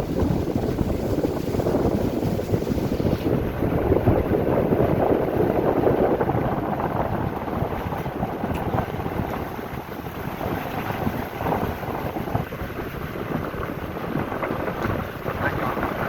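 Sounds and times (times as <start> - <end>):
rough water: 0.0 - 16.0
wind buffeting microphone: 0.0 - 16.0.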